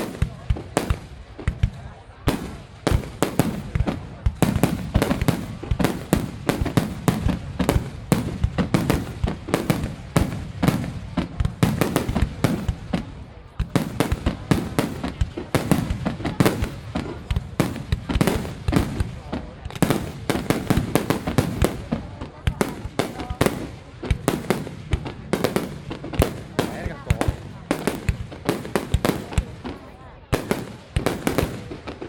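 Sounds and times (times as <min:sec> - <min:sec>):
firework bangs: 0:00.0 - 0:32.0.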